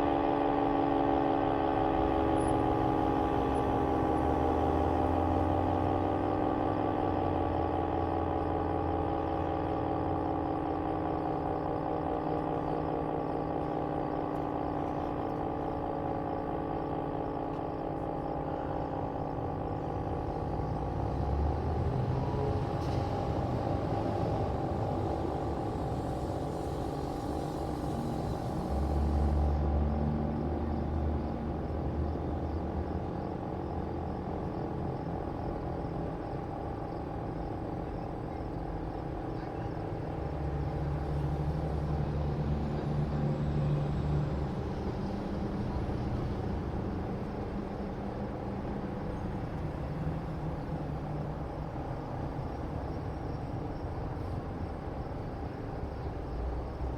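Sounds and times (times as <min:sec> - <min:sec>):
faint steady tones: 0:00.0 - 0:56.9
vehicle engine rumbling past: 0:19.1 - 0:56.9.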